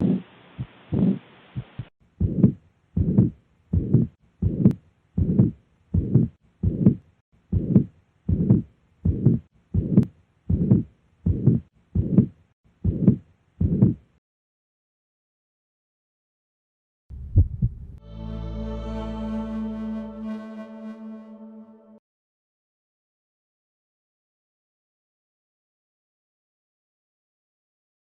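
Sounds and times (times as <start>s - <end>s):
heartbeat through a stethoscope: 0.0s - 14.1s, 17.1s - 18.0s.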